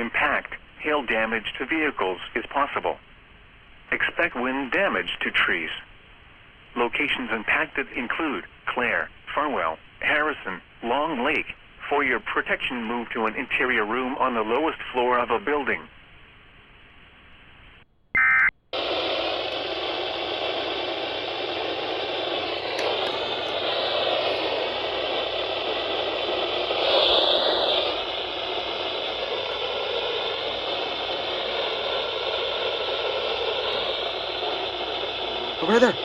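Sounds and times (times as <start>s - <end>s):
radio static hiss: 18.9s - 36.0s.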